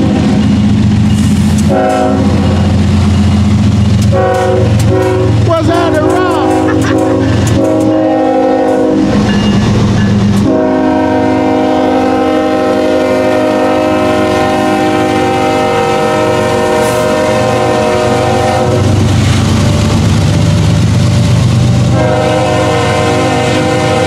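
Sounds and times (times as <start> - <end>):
train wheels clattering on rails: 0.0 - 10.6, 15.9 - 24.0
diesel locomotive rumble: 0.0 - 24.0
locomotive air horn blasts: 1.6 - 2.6, 4.1 - 9.1, 10.4 - 19.0, 21.9 - 24.0.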